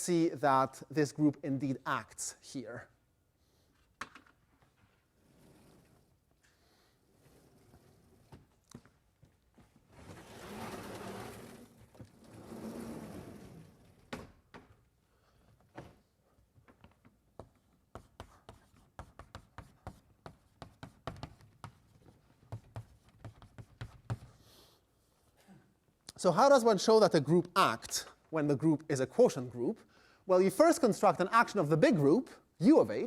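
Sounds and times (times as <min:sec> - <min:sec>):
chalk tapping on blackboard: 0:17.4 - 0:24.4.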